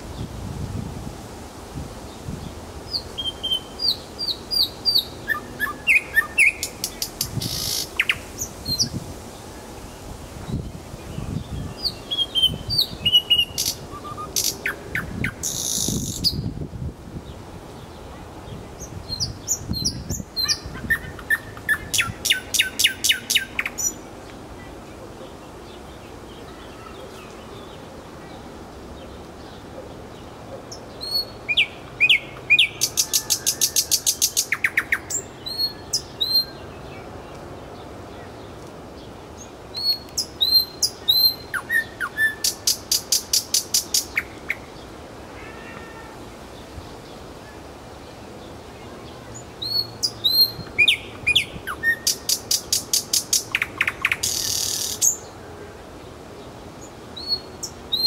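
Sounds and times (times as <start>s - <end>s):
bird singing with rattles: 3.2s - 8.9s, 11.3s - 16.5s, 19.1s - 24.0s, 49.6s - 55.2s.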